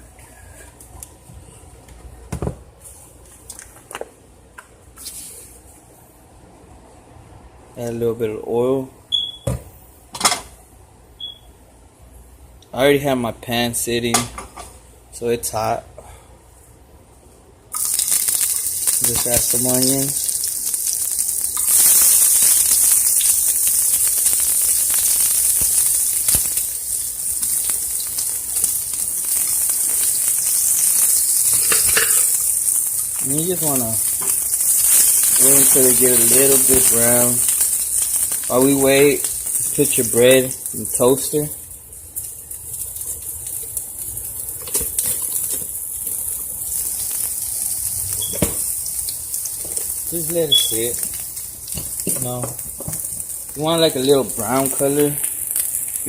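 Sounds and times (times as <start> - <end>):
onions sizzling in oil: 17.7 - 56.0.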